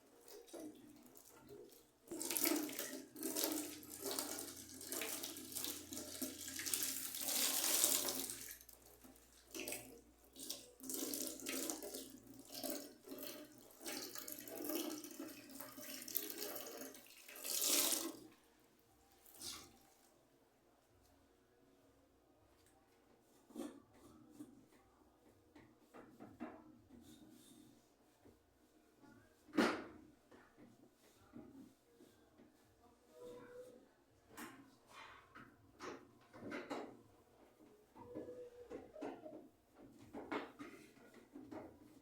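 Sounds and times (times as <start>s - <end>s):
tap water splashing in a sink: 0.1s - 18.4s.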